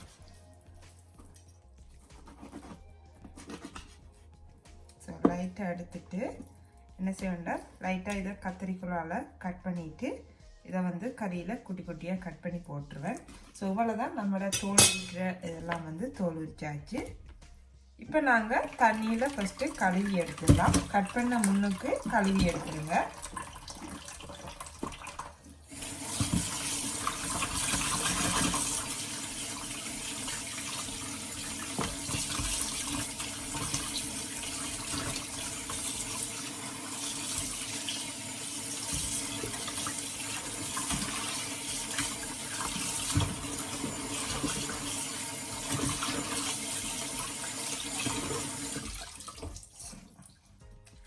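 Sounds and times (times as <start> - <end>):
tap running into a sink: 20.2 - 21.6, 22.2 - 51.0.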